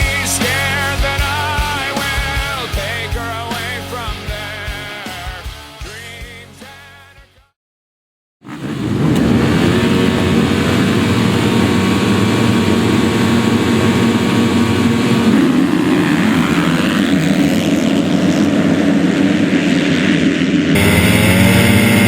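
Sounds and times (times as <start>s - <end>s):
motocross bikes revving: 8.4s - 22.0s.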